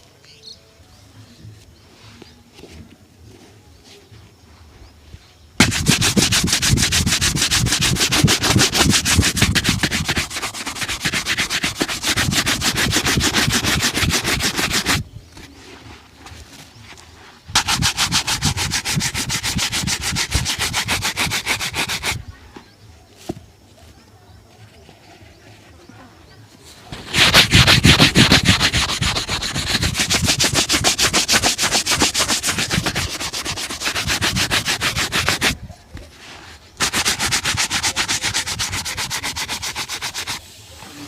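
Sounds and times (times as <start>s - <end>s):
rubbing strokes on leather shoe: 5.6s - 22.3s, 26.6s - 41.0s.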